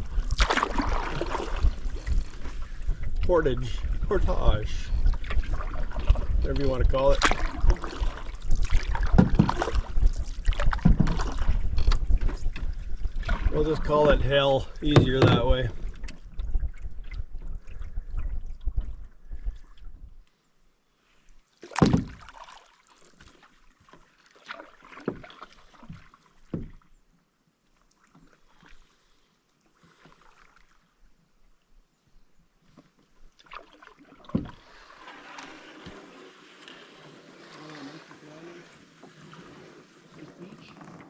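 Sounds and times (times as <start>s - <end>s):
paddle knocking against hull: 0.0s - 19.5s, 21.7s - 22.5s, 23.2s - 26.8s, 33.4s - 38.2s
paddle strokes in water: 0.0s - 20.2s, 21.0s - 27.0s, 27.6s - 31.8s, 32.4s - 41.0s.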